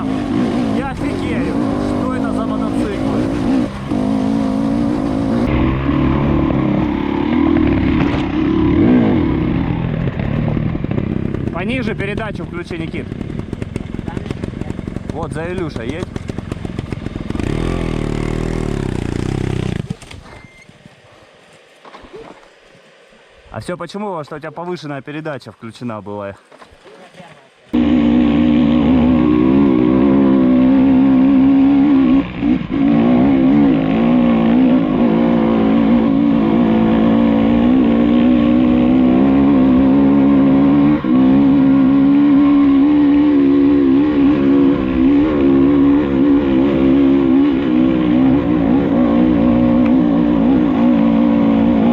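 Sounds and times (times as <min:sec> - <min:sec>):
motorcycle engine revving hard: 0:00.0 - 0:20.2, 0:27.8 - 0:51.9
motorcycle engine under load: 0:00.0 - 0:21.2.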